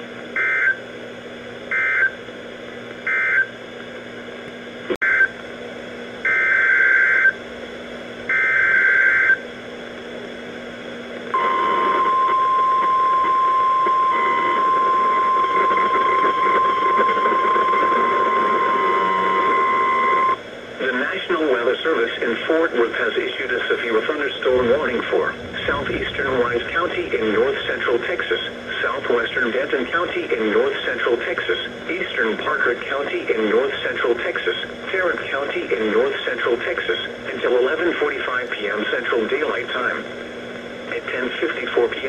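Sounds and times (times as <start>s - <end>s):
steady single-pitch alarm tone: 1.7s - 2.2s, 3.0s - 3.5s, 6.2s - 7.4s, 8.3s - 9.4s, 11.4s - 20.4s
warbling data tone bursts: 24.4s - 29.4s.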